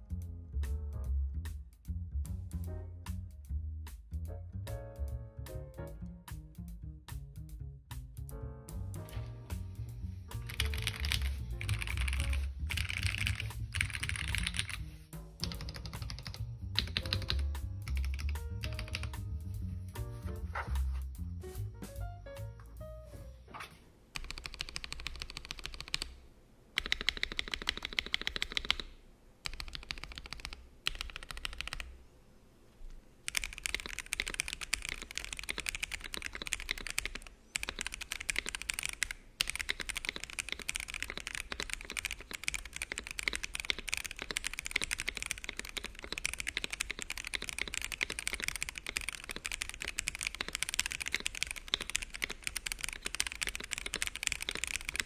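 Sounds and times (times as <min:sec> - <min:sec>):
mechanical keyboard typing: 0:10.2 - 0:14.8, 0:15.4 - 0:19.4, 0:24.2 - 0:26.2, 0:26.8 - 0:31.9, 0:33.2 - 0:55.0.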